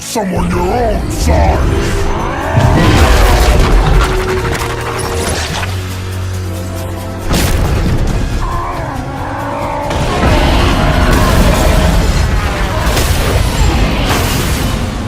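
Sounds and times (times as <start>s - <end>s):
dramatic background music: 0.0s - 15.0s
booming impact effects: 7.2s - 8.4s.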